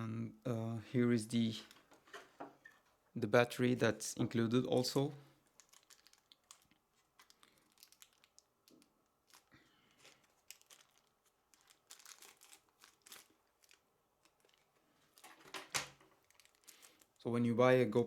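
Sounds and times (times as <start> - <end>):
plastic packaging crinkling: 4.8 - 17.2.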